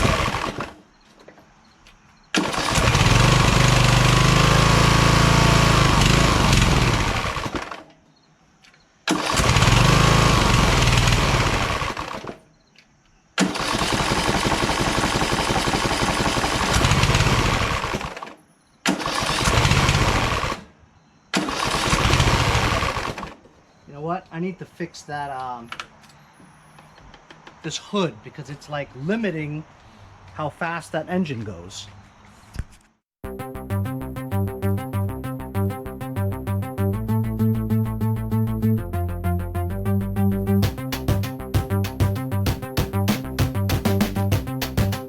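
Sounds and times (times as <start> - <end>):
lawn tractor engine running: 0.0 - 0.8, 2.4 - 7.9, 9.1 - 12.4, 13.4 - 20.7, 21.3 - 23.5.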